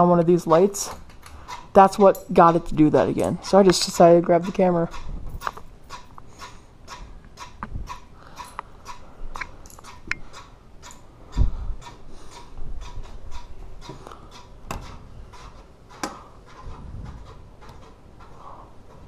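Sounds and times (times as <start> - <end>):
ceiling fan blade ticking: 0.0 - 19.0.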